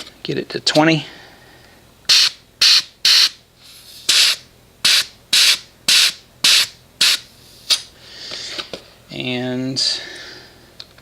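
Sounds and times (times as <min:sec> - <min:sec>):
compressed air hissing into tire: 0:02.1 - 0:07.9.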